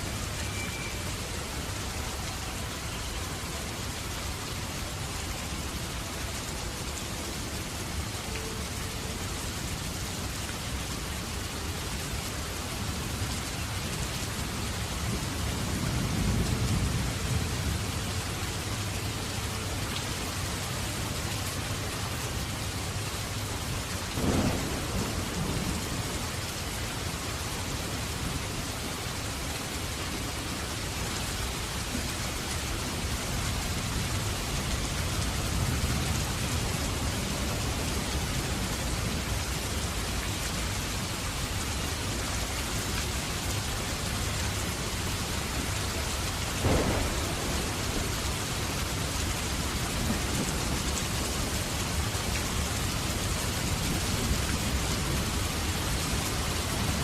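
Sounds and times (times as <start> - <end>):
heavy rain falling: 0.0 - 57.0
sharp thunderclaps: 24.2 - 26.1, 46.6 - 49.2
low thunder rumbling: 24.2 - 26.8, 46.4 - 52.9.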